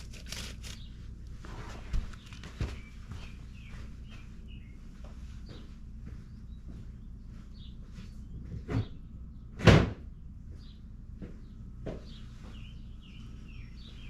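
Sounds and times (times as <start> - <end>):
faint bird chirps: 2.0 - 9.6, 10.5 - 14.0.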